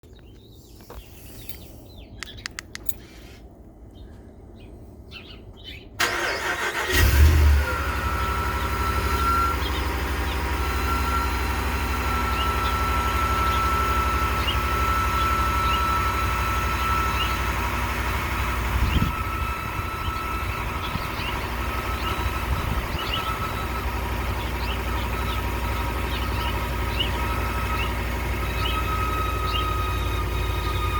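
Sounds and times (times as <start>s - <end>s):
engine starting and idling: 6.0s - 30.9s.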